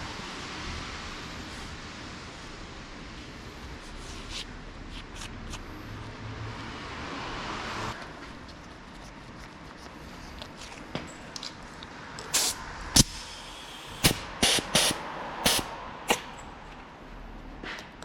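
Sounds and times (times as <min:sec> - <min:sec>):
short bursts of hiss: 0:12.3 - 0:16.4.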